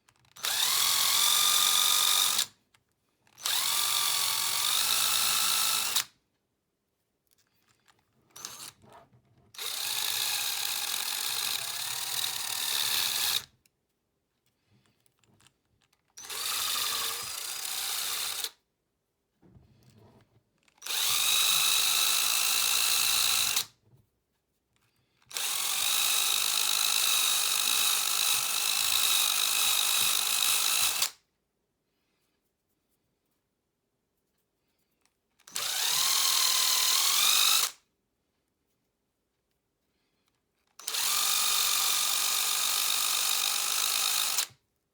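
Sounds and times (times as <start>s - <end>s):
power tool motor whining: 0.4s - 2.5s, 3.4s - 6.0s, 8.4s - 8.8s, 16.2s - 18.5s, 20.8s - 23.7s, 25.3s - 31.1s, 35.5s - 37.8s, 40.8s - 44.5s.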